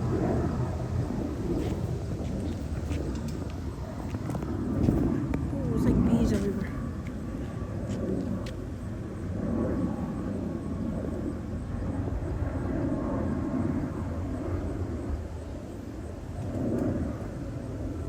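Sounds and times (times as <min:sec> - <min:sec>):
distant warning sirens: 0:00.0 - 0:07.5
low steady rumble: 0:00.0 - 0:18.0.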